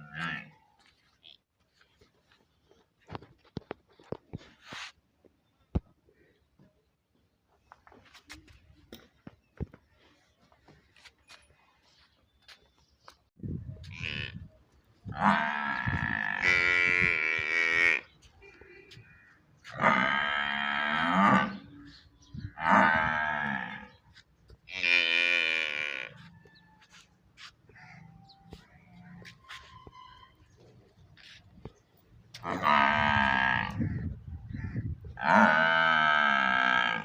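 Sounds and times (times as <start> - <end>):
water buffalo mooing: 15.2 - 18.1, 19.8 - 21.6, 32.4 - 33.9, 35.2 - 37.0.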